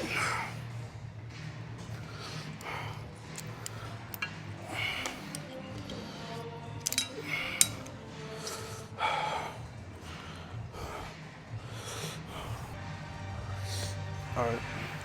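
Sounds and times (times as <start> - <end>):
faint background music: 0.0 - 15.0
person breathing hard: 2.0 - 6.5, 7.2 - 12.8.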